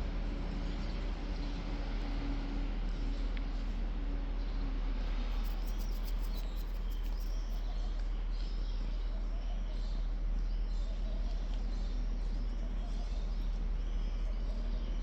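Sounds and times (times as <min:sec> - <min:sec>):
low rumble and hiss: 0:00.0 - 0:15.0
faint high chirps and squeaks: 0:05.3 - 0:15.0.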